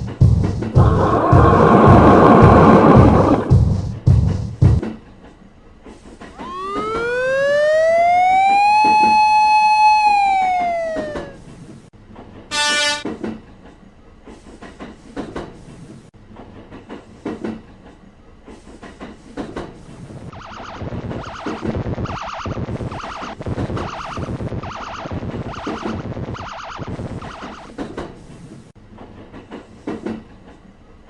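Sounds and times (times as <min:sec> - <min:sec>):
cartoon train whine: 0:00.8 - 0:03.6, 0:06.3 - 0:11.5, 0:12.5 - 0:13.1
bright horn toot: 0:12.5 - 0:13.1.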